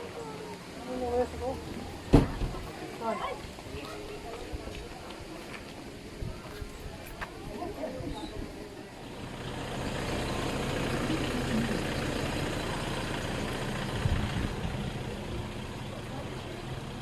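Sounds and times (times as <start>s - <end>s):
low thump: 2.1s - 2.7s
engine running with low hum: 8.9s - 17.0s.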